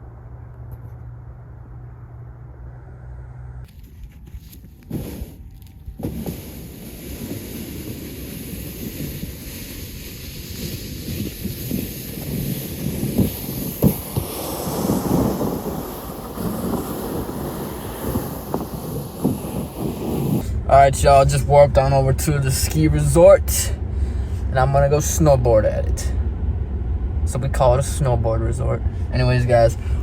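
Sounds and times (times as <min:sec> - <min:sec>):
wind buffeting microphone: 0:04.2 - 0:23.3.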